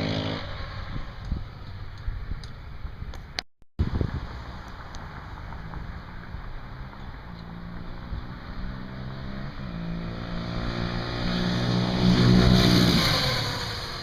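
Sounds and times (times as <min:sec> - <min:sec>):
motorcycle engine accelerating past: 0:00.0 - 0:01.2, 0:05.2 - 0:14.0.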